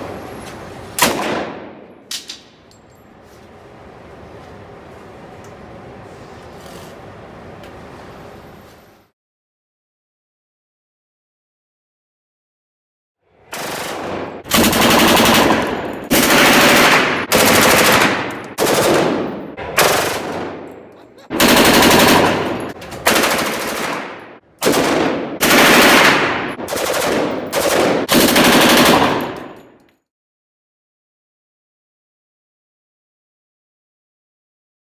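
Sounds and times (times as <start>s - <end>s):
machine gun bursts: 13.5s - 29.8s.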